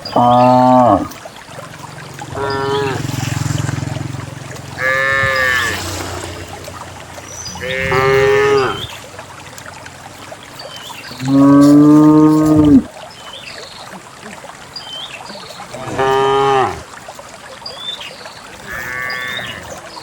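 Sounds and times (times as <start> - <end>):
cows mooing: 0.0 - 1.2, 2.2 - 6.7, 7.5 - 8.9, 11.1 - 12.9, 15.8 - 16.8, 18.6 - 19.7.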